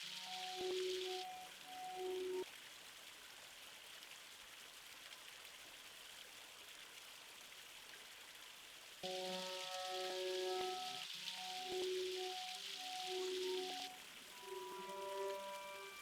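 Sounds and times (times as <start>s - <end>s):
held music notes: 0.0s - 2.4s, 9.0s - 16.0s
faint woodland ambience hiss: 0.0s - 16.0s.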